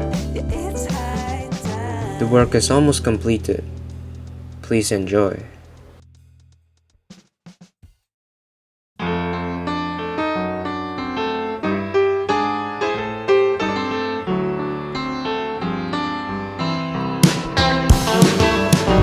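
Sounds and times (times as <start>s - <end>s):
piano instrumental music: 0.0s - 5.9s, 9.0s - 19.0s
band playing: 0.0s - 6.0s, 17.2s - 19.0s.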